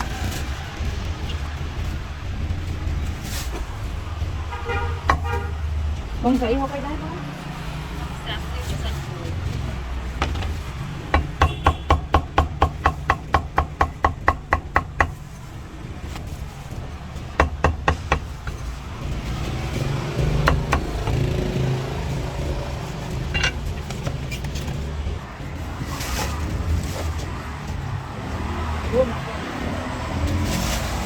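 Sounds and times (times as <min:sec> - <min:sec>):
cleaver chopping meat on block: 0:11.2 - 0:15.2, 0:20.2 - 0:21.4.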